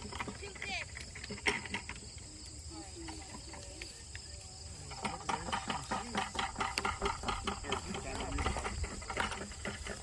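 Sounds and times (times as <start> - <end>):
insect chorus: 0.0 - 10.0
people talking: 0.2 - 1.0, 2.2 - 6.5, 7.4 - 9.3.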